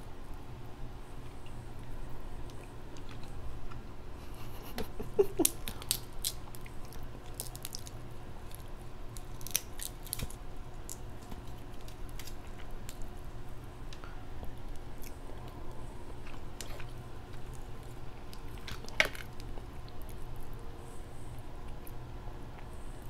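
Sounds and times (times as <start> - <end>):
chewing and smacking: 1.2 - 4.4, 5.3 - 13.1, 14.4 - 20.6.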